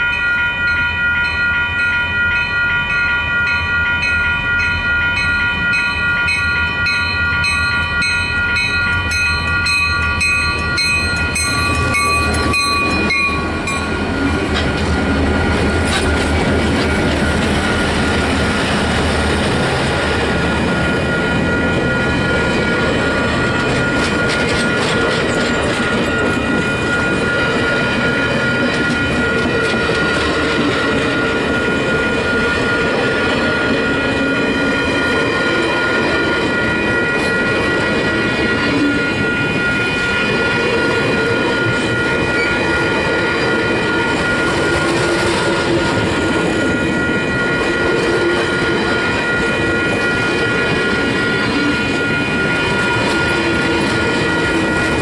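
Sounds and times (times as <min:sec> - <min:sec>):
train cars rumbling on rails: 0:00.0 - 0:55.0.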